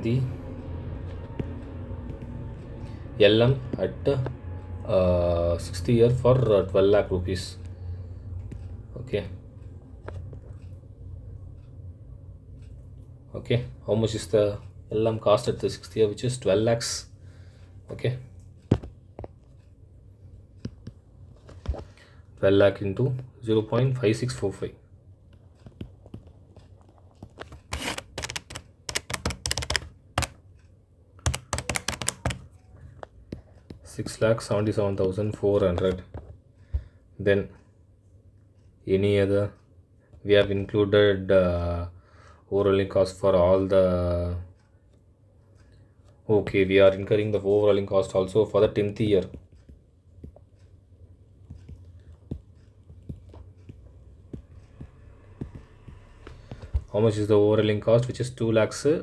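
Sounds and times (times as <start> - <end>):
low steady hum: 0.0 - 59.0
faint clicks and taps: 1.0 - 2.9, 7.6 - 11.8, 17.8 - 22.2, 23.0 - 37.7, 44.6 - 57.2
keys clicking: 27.2 - 30.4, 31.2 - 32.6.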